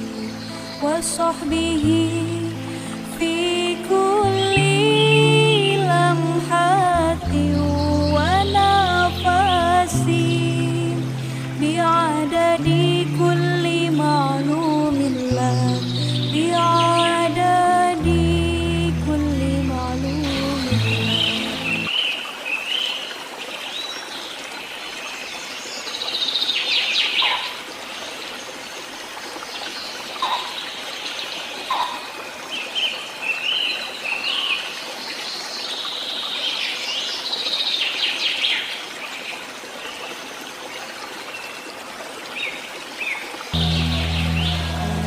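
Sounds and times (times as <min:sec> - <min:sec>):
stream water running: 0:00.0 - 0:45.0
small birds chirping: 0:29.6 - 0:33.0.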